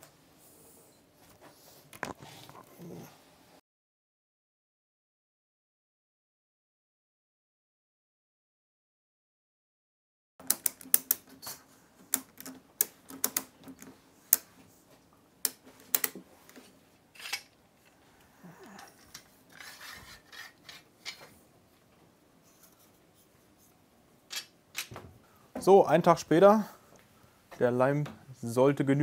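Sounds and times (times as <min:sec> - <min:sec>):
wooden workpieces clicking and knocking: 0:10.4 - 0:14.7, 0:15.4 - 0:18.0, 0:18.6 - 0:22.1, 0:24.3 - 0:25.2
rubbing and scraping: 0:18.7 - 0:21.4.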